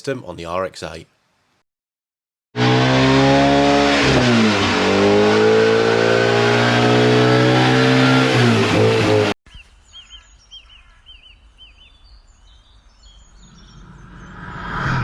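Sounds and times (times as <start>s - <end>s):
car engine accelerating through gears: 2.6s - 9.4s.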